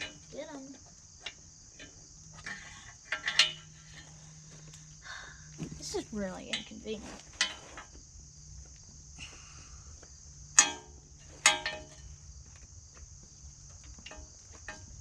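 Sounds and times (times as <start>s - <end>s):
tools clanking on metal: 0.0s - 4.9s, 5.6s - 8.0s, 10.5s - 12.2s, 13.8s - 15.0s.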